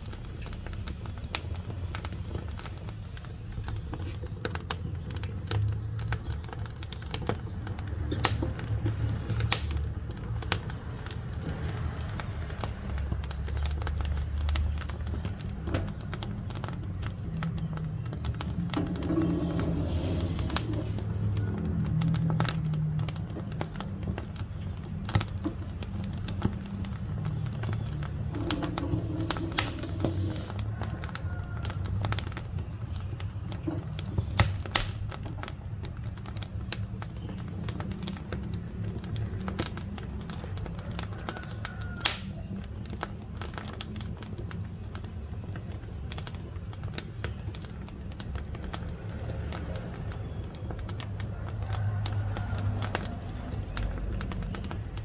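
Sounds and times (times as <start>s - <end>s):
firewood crackling and popping: 0.0s - 55.0s
low steady stove rumble: 0.0s - 55.0s.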